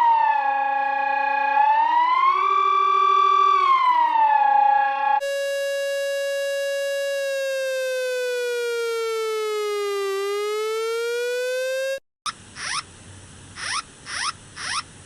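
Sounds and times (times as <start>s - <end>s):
electronic alarm tone: 5.2s - 12.0s.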